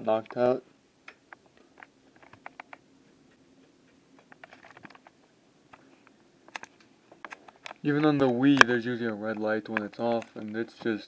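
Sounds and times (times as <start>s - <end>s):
low steady hum: 0.0s - 11.0s
keyboard and mouse clicking: 1.1s - 2.8s, 6.5s - 8.7s.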